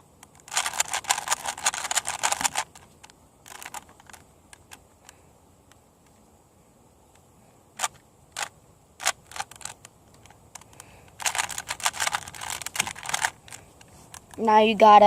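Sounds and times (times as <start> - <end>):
puzzle cube plastic clicks: 0.2 - 5.8, 7.8 - 14.5.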